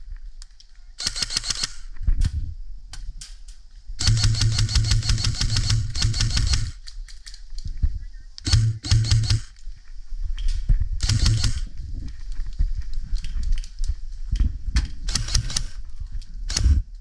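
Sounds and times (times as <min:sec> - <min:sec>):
airsoft gun firing bursts: 0:01.0 - 0:01.9, 0:04.0 - 0:06.9, 0:08.5 - 0:09.6, 0:11.0 - 0:11.7, 0:15.1 - 0:15.8, 0:16.5 - 0:16.9
gearbox whir: 0:04.0 - 0:06.8, 0:08.5 - 0:09.6, 0:11.0 - 0:11.7, 0:15.1 - 0:15.7, 0:16.5 - 0:16.9.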